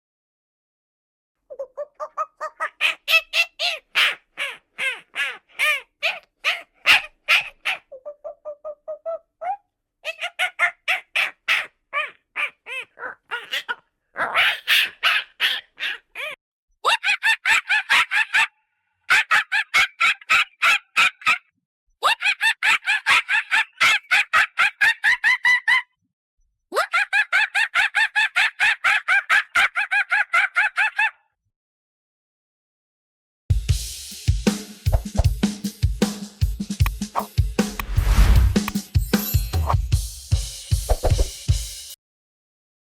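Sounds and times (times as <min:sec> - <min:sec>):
monkey calling: 0:01.5 - 0:18.5.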